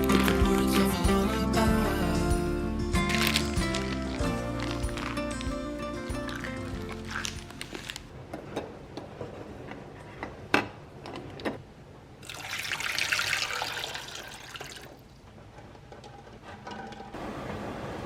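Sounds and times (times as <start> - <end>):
water running from tap: 12.3 - 15.0.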